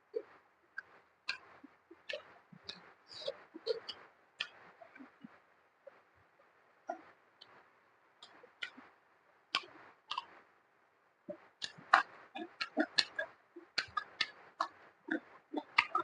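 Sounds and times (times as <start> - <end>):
person chewing: 2.0 - 5.0, 9.6 - 10.3, 11.6 - 16.0.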